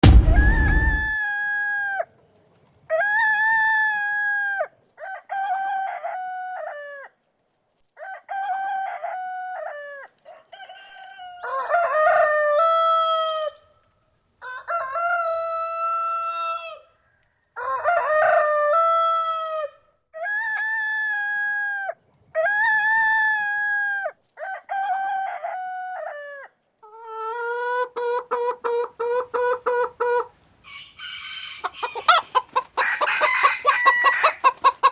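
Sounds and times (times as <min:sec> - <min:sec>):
low thump: 0:00.0 - 0:01.1
rooster crowing: 0:00.2 - 0:02.1, 0:08.0 - 0:13.6, 0:14.4 - 0:19.8, 0:30.6 - 0:34.6
rooster clucking: 0:26.9 - 0:34.9.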